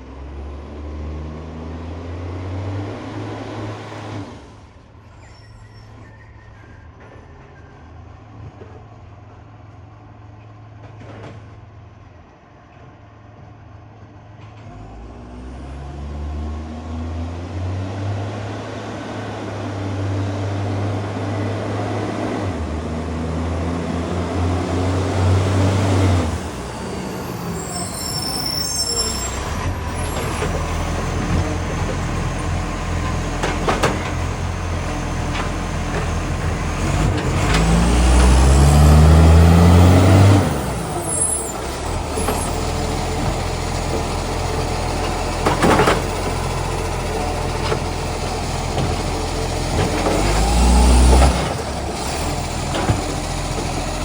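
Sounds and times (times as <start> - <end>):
garbage truck engine shifting gears: 14.4 - 54.0.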